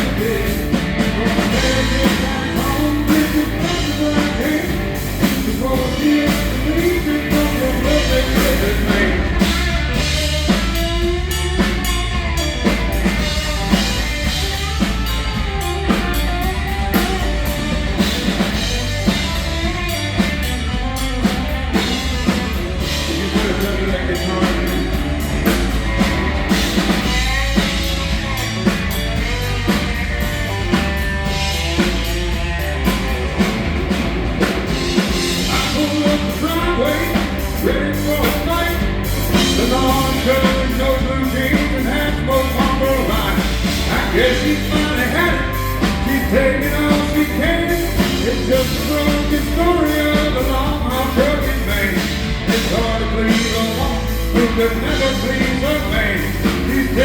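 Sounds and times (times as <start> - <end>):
country rock band instrumental: 0.0 - 57.0
drum kit steady beat: 0.0 - 57.0.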